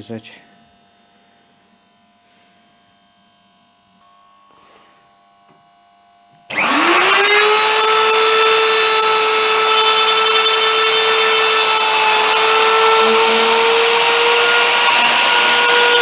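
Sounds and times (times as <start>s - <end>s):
electric router whining: 6.5s - 16.0s.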